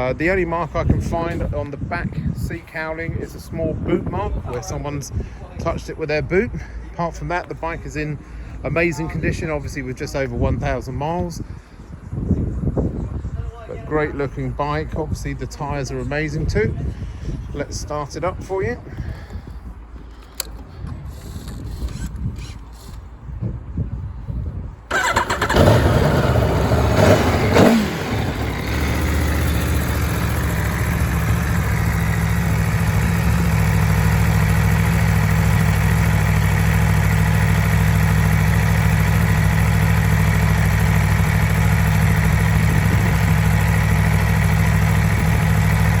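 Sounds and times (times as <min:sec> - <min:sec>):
motorcycle engine starting and idling: 0:24.9 - 0:46.0.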